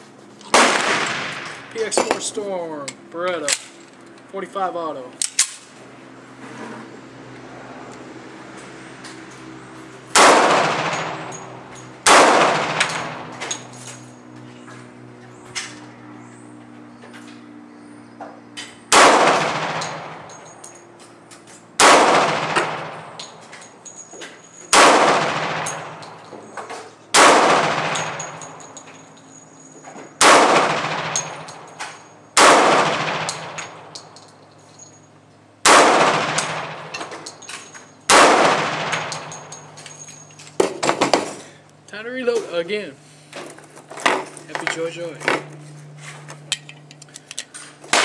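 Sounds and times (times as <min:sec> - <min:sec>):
pistol shots with echo: 0:00.5 - 0:02.1, 0:10.1 - 0:11.3, 0:12.0 - 0:13.3, 0:18.9 - 0:20.2, 0:21.8 - 0:23.0, 0:24.7 - 0:26.0, 0:27.1 - 0:28.4, 0:30.2 - 0:31.6, 0:32.4 - 0:33.7, 0:35.6 - 0:36.9, 0:38.1 - 0:39.4.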